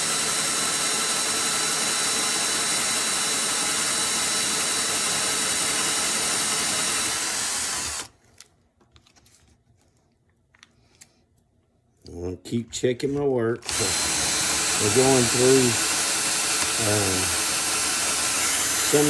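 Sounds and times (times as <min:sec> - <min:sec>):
power drill with hole saw: 0:00.0 - 0:08.1, 0:13.6 - 0:19.0.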